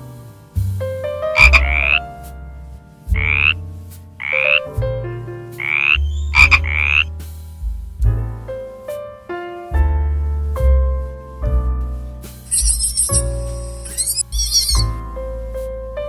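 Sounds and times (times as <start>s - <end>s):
piano music: 0.0s - 16.0s
rasping animal calls: 1.4s - 2.1s, 3.2s - 3.6s, 4.2s - 4.7s, 5.6s - 7.1s, 12.5s - 14.9s.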